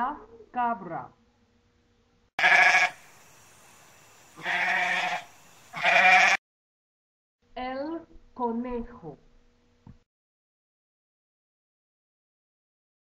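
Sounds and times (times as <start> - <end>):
goat bleating: 2.4 - 3.0, 4.4 - 6.4
faint hiss: 2.5 - 6.2.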